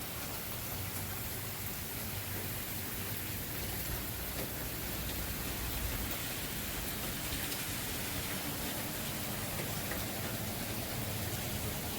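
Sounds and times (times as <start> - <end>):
steady rain falling: 0.0 - 11.9.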